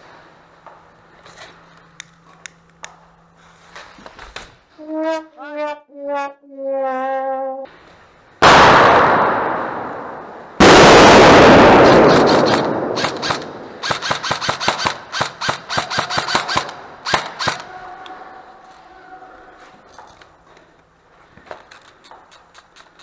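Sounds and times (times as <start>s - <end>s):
loud ringing blasts: 8.4s - 15.2s
airsoft gun shots: 8.4s - 17.7s.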